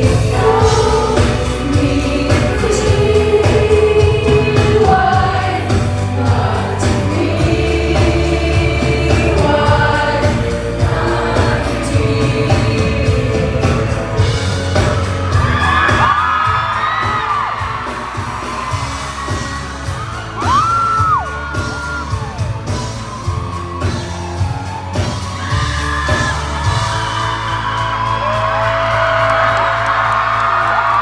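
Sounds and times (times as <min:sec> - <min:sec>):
live band music with singing: 0:00.0 - 0:31.0
fans whooping and yelling: 0:14.6 - 0:31.0.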